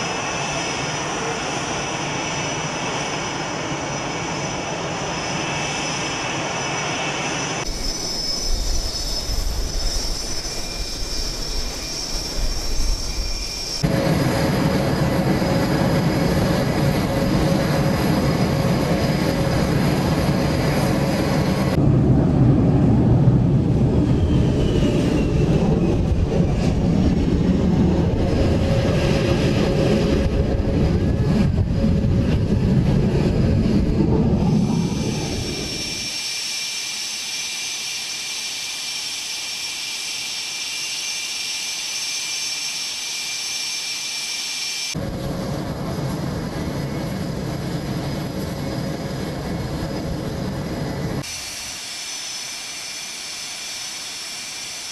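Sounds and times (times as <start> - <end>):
jet engines whining: 0.0 - 54.9.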